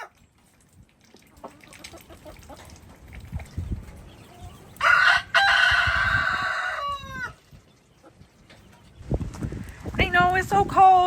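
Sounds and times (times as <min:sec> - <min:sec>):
rooster crowing: 0:04.8 - 0:07.4.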